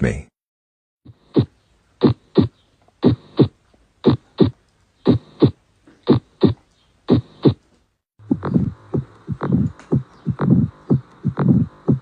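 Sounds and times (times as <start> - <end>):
heart beating: 1.1 - 7.6, 8.2 - 12.0
steady low hum: 8.2 - 12.0.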